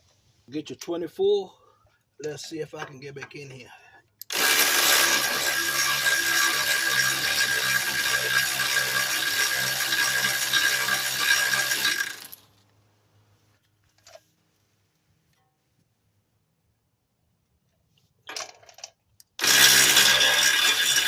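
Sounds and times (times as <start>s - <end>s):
ratchet clicking: 4.2s - 12.4s, 19.2s - 21.0s.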